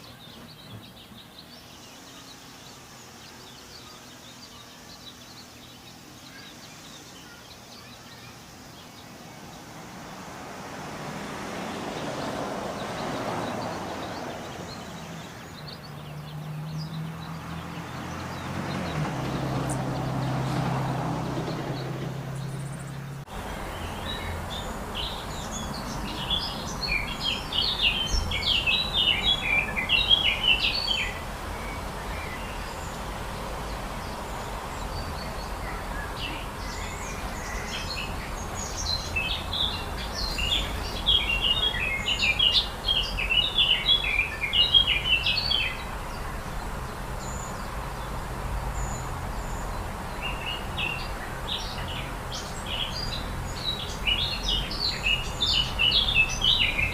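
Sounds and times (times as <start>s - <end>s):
songbird chattering: 12.2s - 56.9s.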